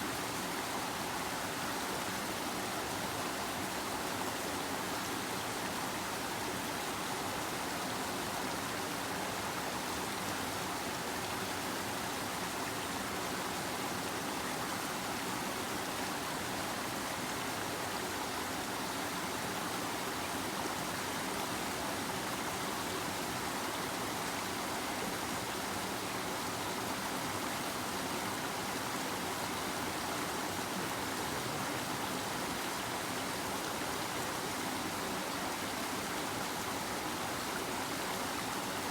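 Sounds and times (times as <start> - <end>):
river water rushing: 8.6 - 38.9.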